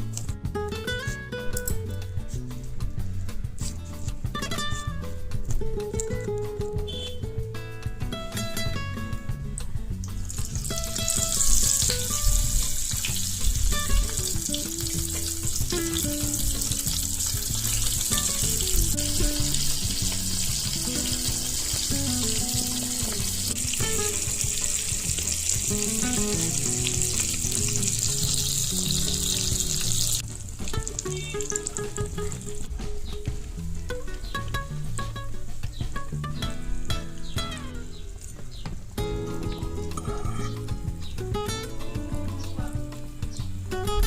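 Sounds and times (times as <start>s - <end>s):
background music: 0.0s - 44.0s
prawns sizzling in oil: 9.9s - 32.8s.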